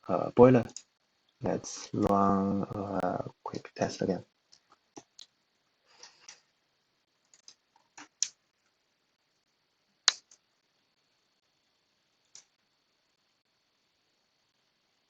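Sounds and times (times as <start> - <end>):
mouse and keyboard clicks: 10.1 - 10.4.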